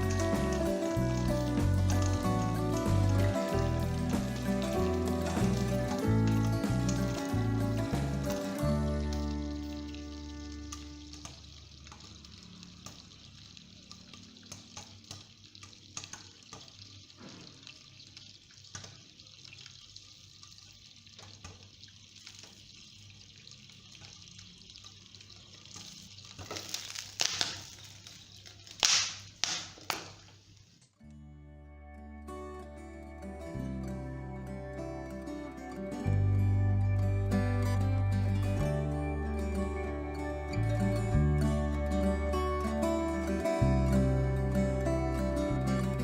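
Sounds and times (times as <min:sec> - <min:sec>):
popcorn popping: 0:00.0 - 0:19.4, 0:25.1 - 0:30.4
oil sizzling: 0:00.0 - 0:30.9, 0:34.6 - 0:46.0.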